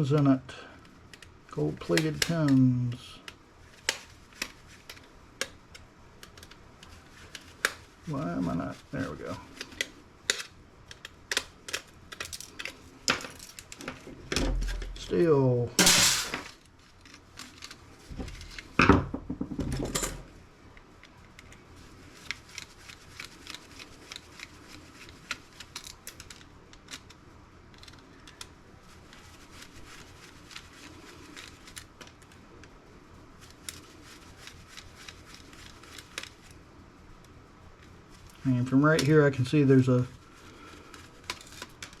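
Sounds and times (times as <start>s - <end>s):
small clicks of parts handled: 0.2s - 1.3s, 9.6s - 15.0s, 15.8s - 18.7s, 25.3s - 28.5s
knocks and clatters of parts: 15.8s - 16.6s, 18.1s - 20.3s.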